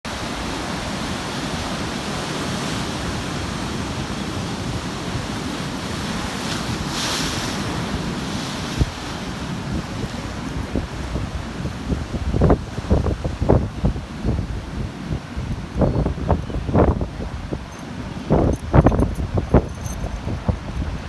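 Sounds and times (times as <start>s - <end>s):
ocean surf breaking: 0.1s - 18.8s
wind buffeting microphone: 7.6s - 21.0s.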